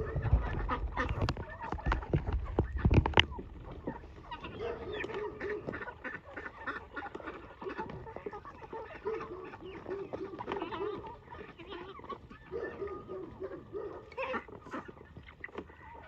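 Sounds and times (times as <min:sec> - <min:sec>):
farm birds calling: 0:00.0 - 0:16.0.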